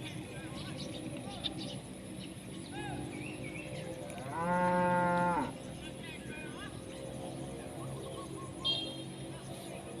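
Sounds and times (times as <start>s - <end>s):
cow mooing: 4.2s - 5.6s.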